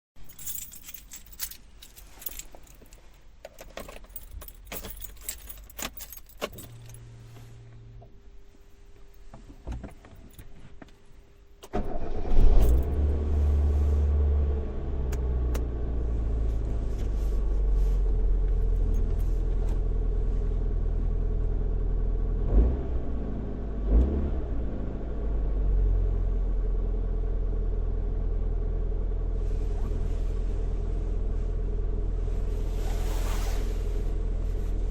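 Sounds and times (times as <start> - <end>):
car keys jangling in ignition: 0.2 - 7.2, 11.6 - 13.1
low electrical hum: 0.2 - 11.7
car engine starting and idling: 0.5 - 34.9.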